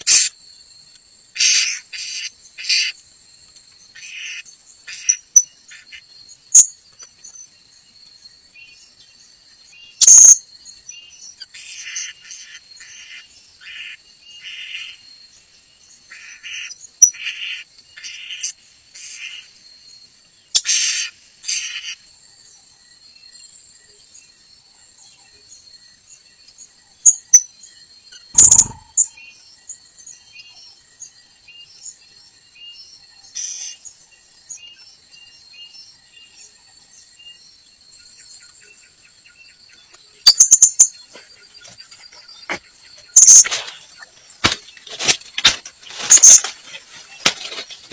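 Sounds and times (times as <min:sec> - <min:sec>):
insects trilling: 0:00.0 - 0:47.9
high bird chirps: 0:10.0 - 0:10.4, 0:28.2 - 0:29.2, 0:39.8 - 0:47.9.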